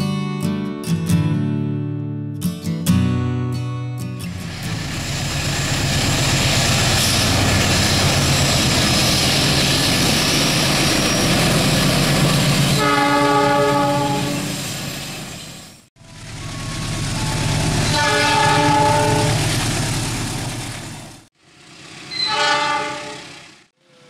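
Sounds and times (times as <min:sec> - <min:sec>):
diesel locomotive rumbling: 0:04.3 - 0:24.0
train horn blast: 0:12.7 - 0:14.6, 0:17.2 - 0:19.5, 0:22.1 - 0:23.4.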